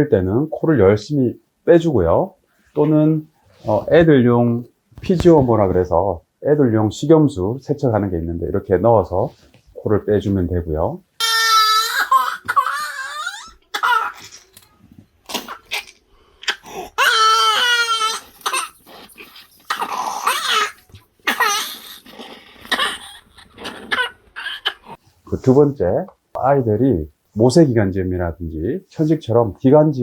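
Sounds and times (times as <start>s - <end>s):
young child wailing: 11.2s - 14.2s, 16.7s - 18.8s
child coughing: 13.7s - 14.3s, 22.7s - 24.2s.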